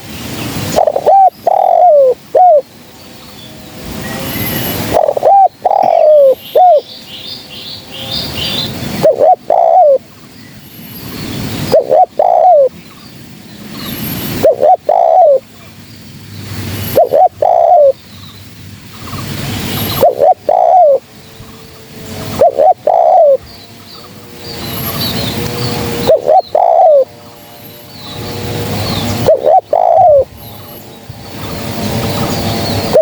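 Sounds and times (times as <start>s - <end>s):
faint bird chirping: 0.0s - 33.0s
dove cooing: 0.6s - 2.7s, 4.8s - 6.9s, 8.4s - 10.1s, 11.5s - 12.8s, 14.3s - 15.5s, 16.9s - 18.0s, 19.2s - 33.0s.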